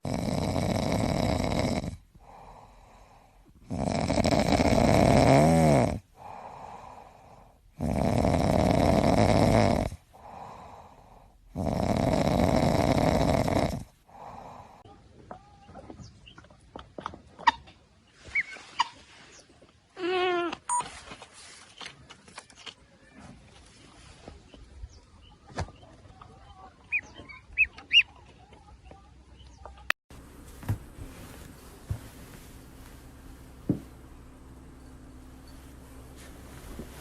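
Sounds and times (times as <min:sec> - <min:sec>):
pet snoring: 0:00.0 - 0:03.0, 0:03.6 - 0:06.8, 0:07.7 - 0:10.8, 0:11.5 - 0:14.6
quiet breaths: 0:00.0 - 0:16.2, 0:30.1 - 0:37.0.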